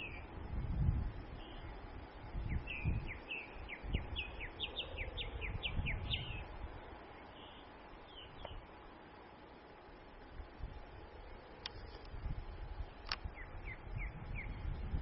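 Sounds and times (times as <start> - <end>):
bird chirping: 0.0 - 0.3, 1.3 - 1.8, 2.4 - 8.7, 13.1 - 14.7
wind rumbling on microphone: 0.0 - 9.0, 9.7 - 15.0.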